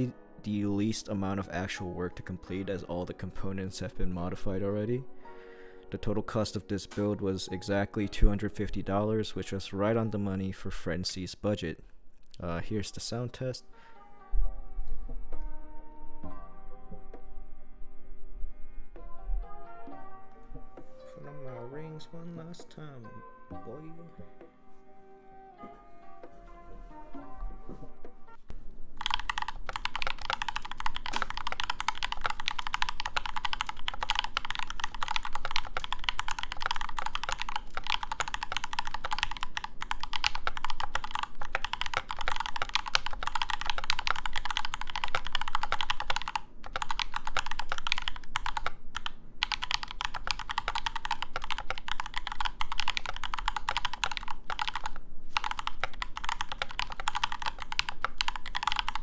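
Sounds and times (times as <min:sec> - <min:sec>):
mechanical keyboard typing: 0:29.0 - 0:59.0.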